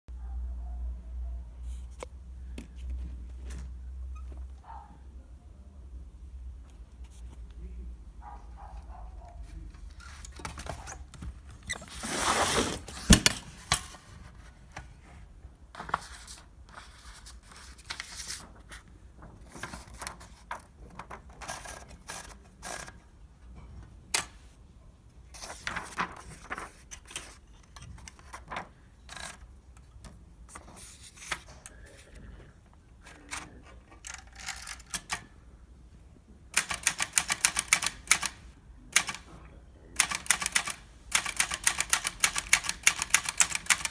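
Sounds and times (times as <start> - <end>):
rustling scrape: 9.5 - 18.9
typewriter clacks: 36.6 - 38.4, 39.0 - 39.3, 40.0 - 43.9
typewriter keystrokes: 36.6 - 39.3, 40.0 - 43.9.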